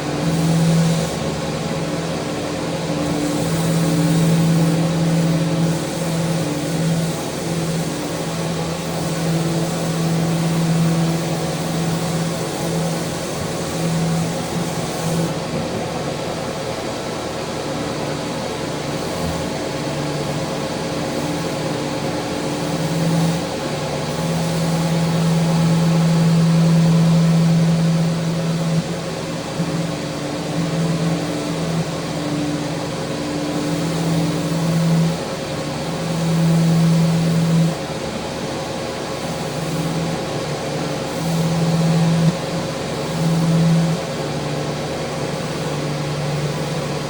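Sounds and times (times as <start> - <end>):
electric sander on wood: 0.0 - 47.0.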